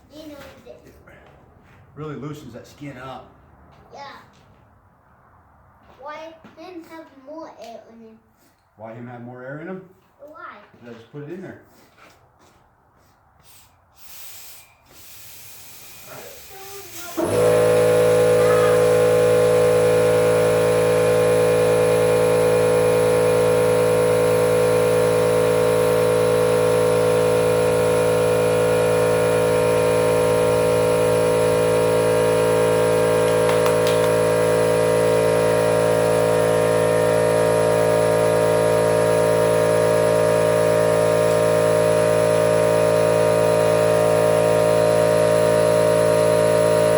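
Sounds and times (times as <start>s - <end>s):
air compressor droning hum: 11.6s - 46.9s.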